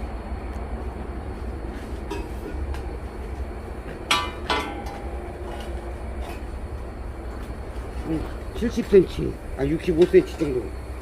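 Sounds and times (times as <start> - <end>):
low engine-like rumble: 0.0 - 11.0
metallic clanks with ringing: 2.1 - 2.6, 4.0 - 6.5.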